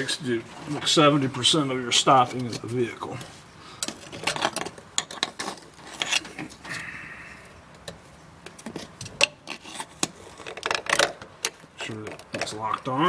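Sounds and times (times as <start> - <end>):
clicks and knocks of cover handling: 2.2 - 6.8, 7.7 - 12.9.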